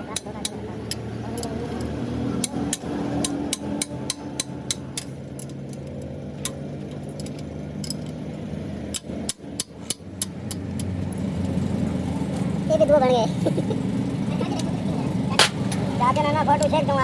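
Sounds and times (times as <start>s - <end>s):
hammer striking metal: 2.4s - 5.6s.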